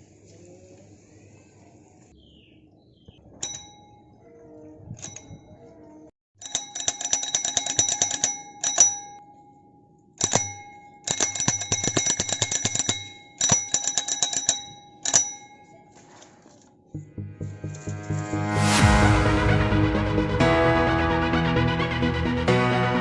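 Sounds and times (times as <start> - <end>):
bicycle bell ringing: 3.4 - 4.3, 5.0 - 5.6, 6.4 - 16.0.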